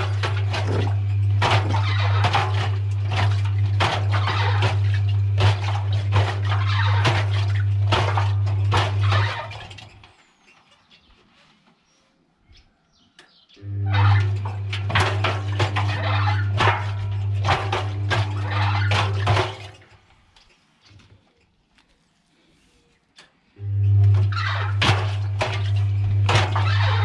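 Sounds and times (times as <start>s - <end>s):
washing machine motor hum: 0.0s - 10.1s, 13.6s - 20.4s, 23.6s - 27.0s.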